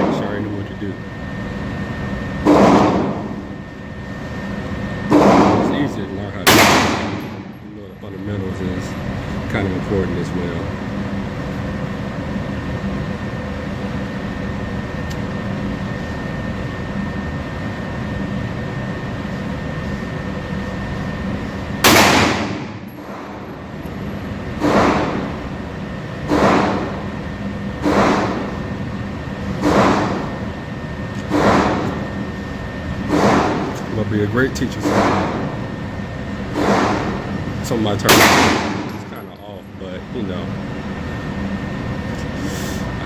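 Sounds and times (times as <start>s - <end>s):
steady background hum: 0.0s - 43.0s
pistol shots echoing indoors: 2.4s - 3.4s, 5.1s - 5.7s, 6.4s - 7.6s, 21.8s - 23.5s, 24.6s - 25.4s, 26.3s - 27.1s, 38.0s - 39.2s.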